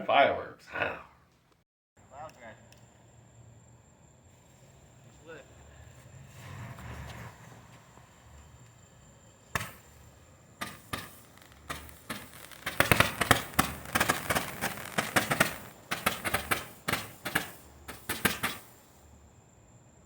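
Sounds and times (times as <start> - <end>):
firework fountain crackling: 4.2 - 19.2
sharp firework pops: 9.4 - 19.0.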